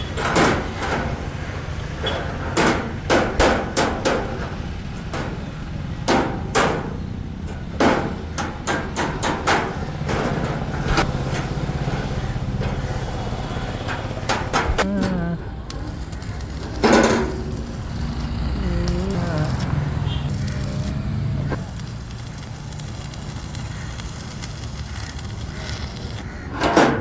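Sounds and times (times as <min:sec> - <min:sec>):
hammer striking metal: 0:02.1 - 0:05.4, 0:06.1 - 0:07.0, 0:07.7 - 0:12.0.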